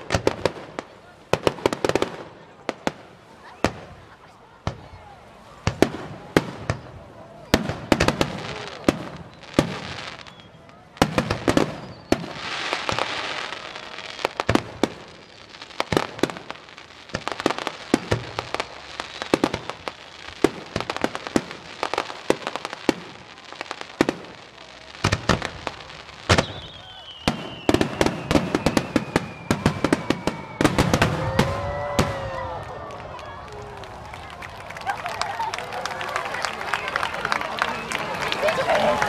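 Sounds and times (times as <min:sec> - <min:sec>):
fireworks bangs and crackling: 0:00.0 - 0:39.0
firework whistle: 0:08.6 - 0:14.3, 0:25.0 - 0:32.6.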